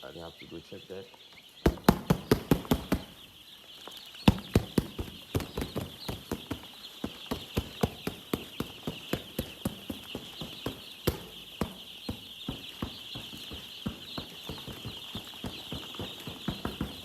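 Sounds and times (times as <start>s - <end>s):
chicks peeping: 0.0s - 17.0s
quick footsteps: 4.3s - 17.0s.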